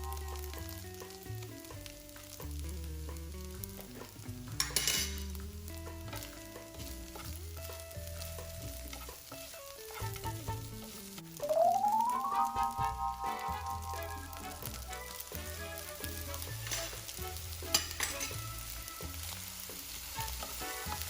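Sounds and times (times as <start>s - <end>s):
background music: 0.0s - 21.0s
rice sizzling in a pan: 0.0s - 21.0s
spatula scraping a pan: 16.3s - 18.6s.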